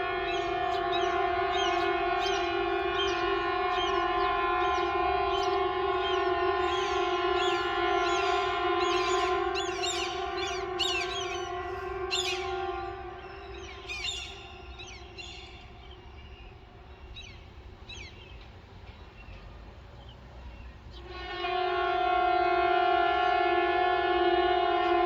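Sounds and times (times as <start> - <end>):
warning siren steady tone: 0.0 - 15.2
birds chirping: 0.2 - 19.4.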